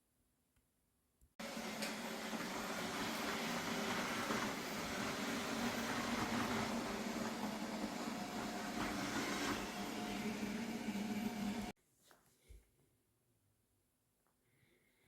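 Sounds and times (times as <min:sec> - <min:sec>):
robot vacuum motor whirring: 0:01.4 - 0:11.7.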